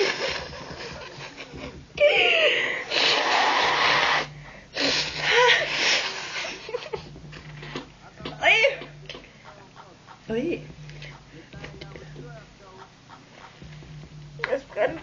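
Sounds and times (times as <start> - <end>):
wheezy breaths through the nose: 2.5 - 6.8.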